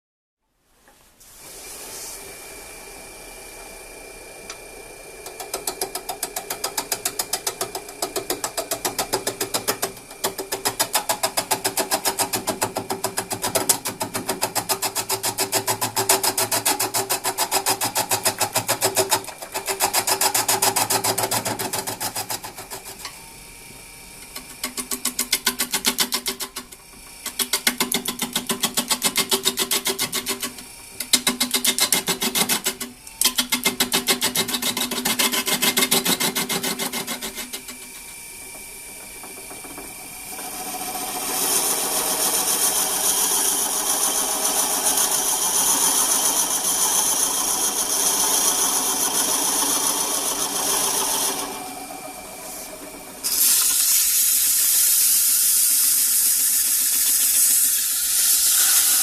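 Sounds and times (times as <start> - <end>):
small electric machine humming: 1.8 - 59.0
fast regular machine clatter: 5.3 - 23.2, 24.2 - 53.3.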